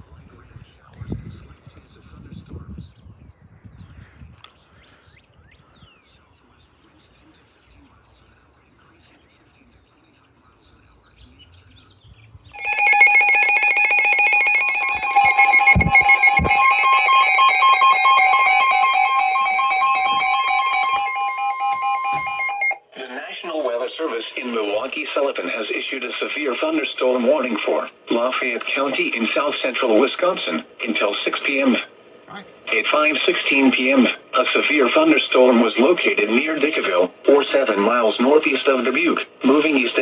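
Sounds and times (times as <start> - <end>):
emergency alert tone: 12.6 - 22.8.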